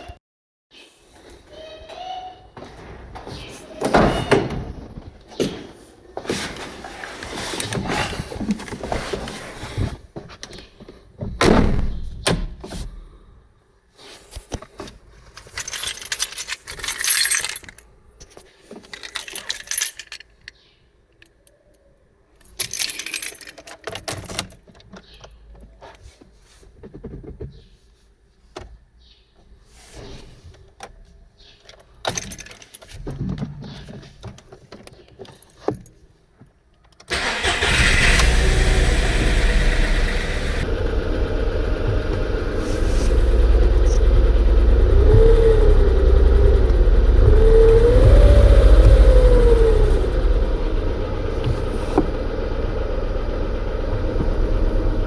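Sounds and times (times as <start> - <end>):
metallic clinks and rattles: 15.3 - 20.6, 22.4 - 24.7, 32.0 - 33.0
keys jingling: 15.4 - 17.9, 18.8 - 20.4, 22.4 - 23.8.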